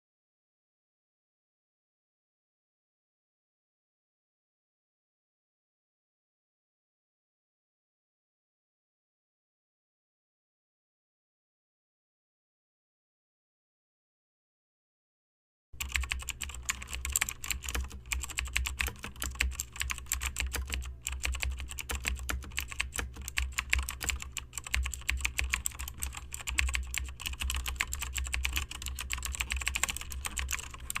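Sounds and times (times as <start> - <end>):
fast keyboard typing: 15.8 - 31.0.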